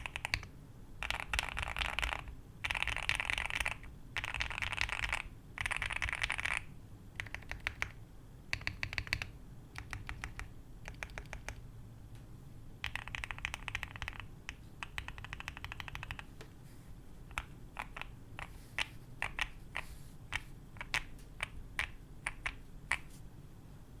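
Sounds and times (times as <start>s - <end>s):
mechanical keyboard keystrokes: 0.0s - 11.6s, 12.8s - 16.3s.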